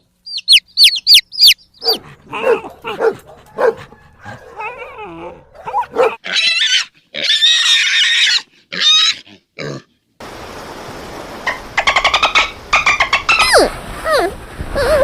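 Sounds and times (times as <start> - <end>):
animal high-pitched cries: 3.7 - 9.4, 12.9 - 15.0
steady background hiss: 10.2 - 13.9.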